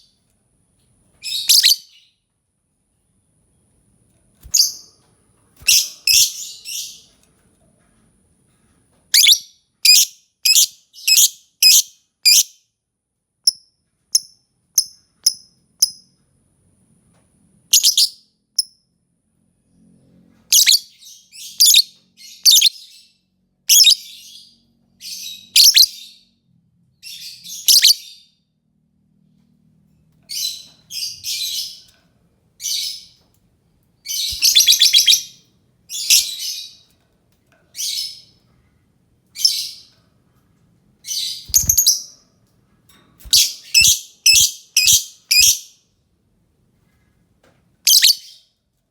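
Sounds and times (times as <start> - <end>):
lovebird chirping: 1.2 - 2.1, 4.4 - 4.9, 5.6 - 7.1, 9.2 - 12.5, 17.7 - 18.2, 20.5 - 23.0, 23.7 - 24.4, 25.0 - 26.2, 27.0 - 28.2, 34.0 - 36.8, 41.1 - 42.2, 43.2 - 45.7, 47.9 - 48.4.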